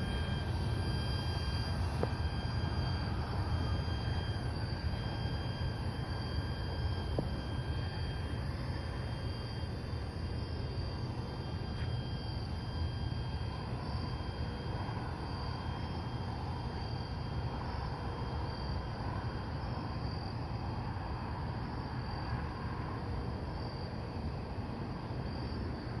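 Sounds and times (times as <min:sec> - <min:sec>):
steady low rumble: 0:00.0 - 0:09.2
night insects chirping: 0:00.0 - 0:26.0.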